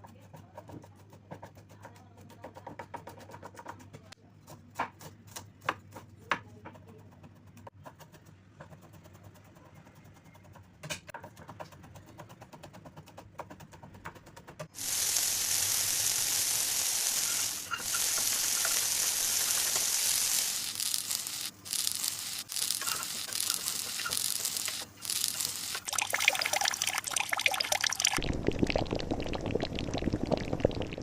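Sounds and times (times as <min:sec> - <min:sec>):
low crackling sound: 0:14.8 - 0:31.0
water pouring: 0:14.8 - 0:31.0.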